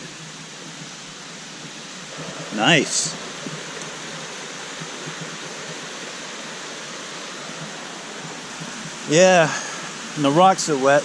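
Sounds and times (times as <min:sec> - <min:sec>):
stream water rushing: 0:00.0 - 0:11.0.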